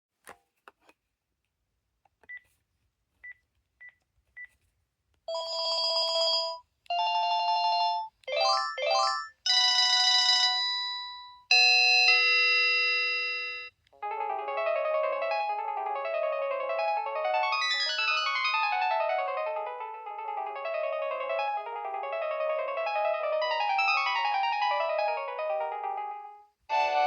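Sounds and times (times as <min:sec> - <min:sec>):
electronic phone ringtones: 0:05.3 - 0:16.0, 0:17.0 - 0:26.1
electronic melody: 0:06.9 - 0:09.6, 0:14.0 - 0:27.0.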